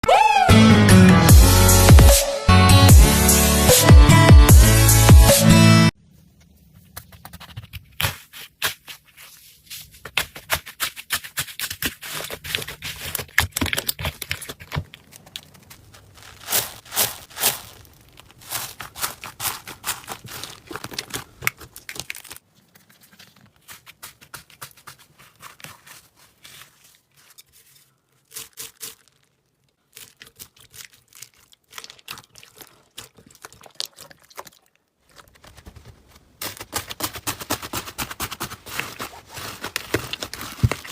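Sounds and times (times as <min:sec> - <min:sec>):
slime crackling and popping: 0:11.3 - 0:22.5.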